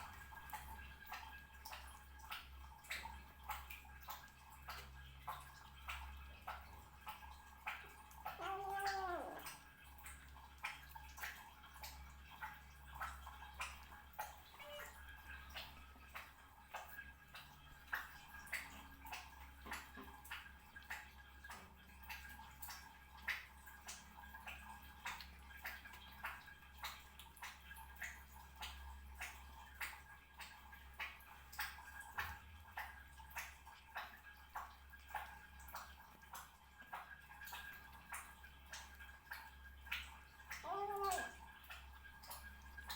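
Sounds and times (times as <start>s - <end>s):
cat chewing and lip-smacking: 0.0s - 21.1s, 39.9s - 42.9s.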